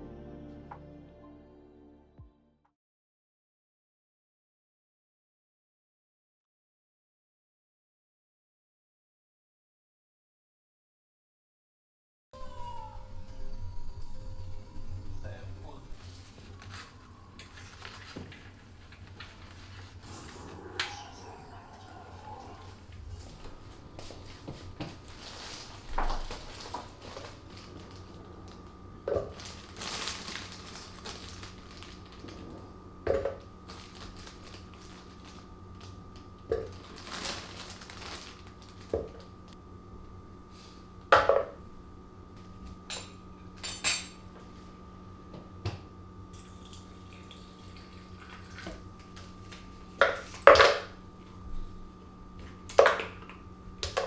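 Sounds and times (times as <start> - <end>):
faint steady hum: 12.4 - 54.0
kitchenware clinking and clattering: 42.9 - 44.3.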